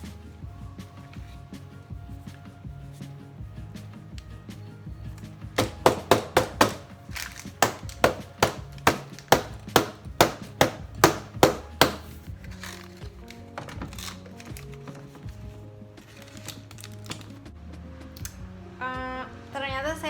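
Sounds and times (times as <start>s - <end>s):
background music: 0.0s - 20.0s
sharp knocks: 5.6s - 6.9s, 7.6s - 12.2s.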